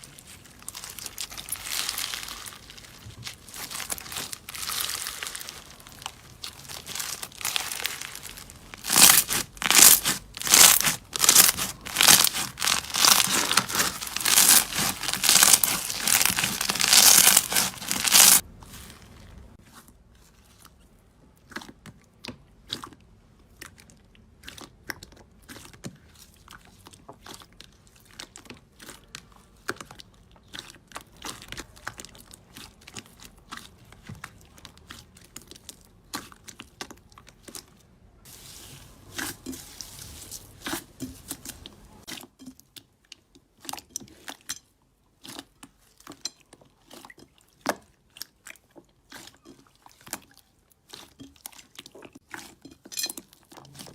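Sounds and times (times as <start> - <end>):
slime crackling and crunching: 0.0 - 19.6.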